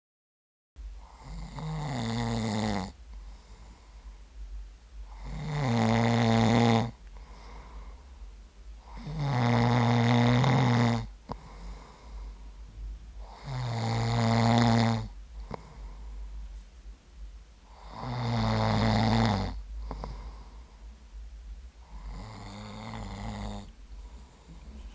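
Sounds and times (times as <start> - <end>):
man snoring: 1.0 - 3.8, 5.1 - 7.6, 8.8 - 12.3, 13.2 - 16.0, 17.7 - 20.6, 21.8 - 24.7.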